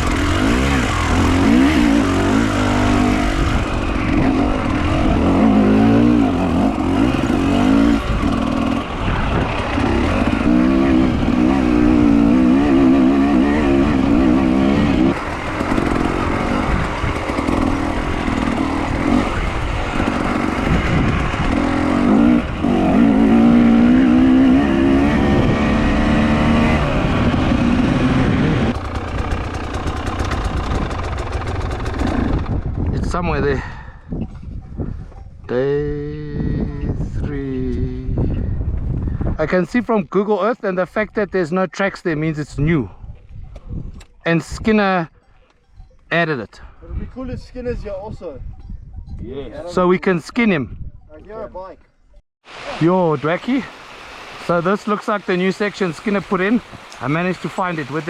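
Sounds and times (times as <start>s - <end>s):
vehicle engine running under load: 0.0s - 32.9s.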